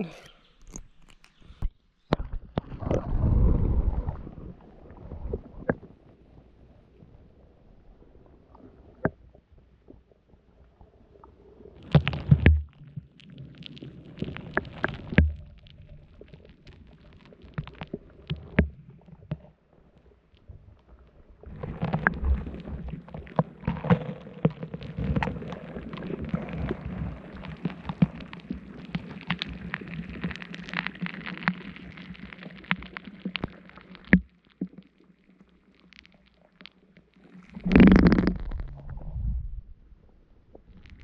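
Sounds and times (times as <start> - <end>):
muffled underwater noise: 0.0 - 0.8.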